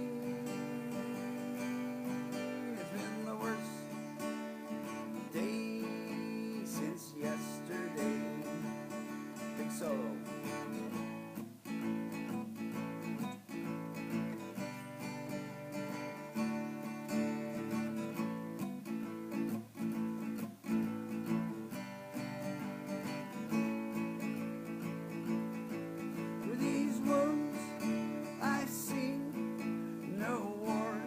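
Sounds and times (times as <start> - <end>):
acoustic guitar strumming chords: 0.0 - 31.0.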